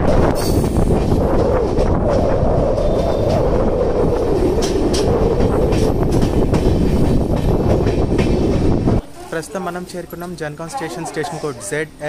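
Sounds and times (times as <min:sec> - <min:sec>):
train rumbling on rails: 0:00.0 - 0:12.0
train wheel clicks: 0:00.2 - 0:08.7.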